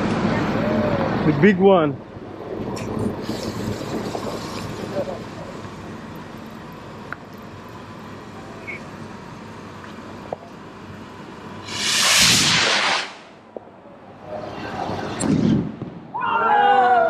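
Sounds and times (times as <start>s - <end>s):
firework rushing hiss: 2.4s - 6.2s, 11.4s - 13.7s, 14.4s - 16.1s.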